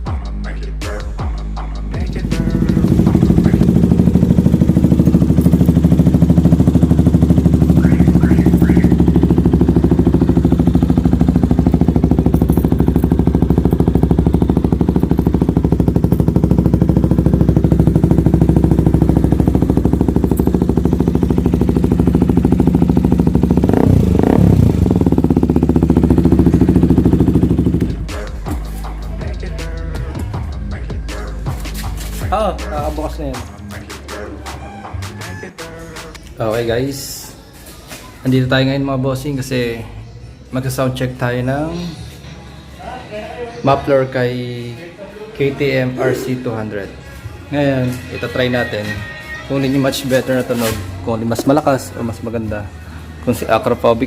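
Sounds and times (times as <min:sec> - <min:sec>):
motorcycle engine idling: 0:00.0 - 0:33.5, 0:47.6 - 0:54.0
engine revving: 0:00.5 - 0:32.3, 0:47.8 - 0:52.5.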